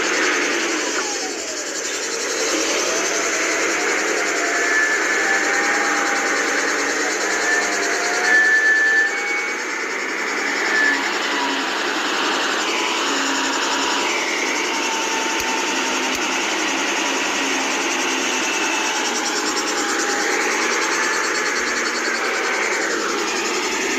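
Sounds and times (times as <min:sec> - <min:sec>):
faint whining tones: 0:00.0 - 0:23.9
heavy machinery engine running: 0:09.5 - 0:23.9.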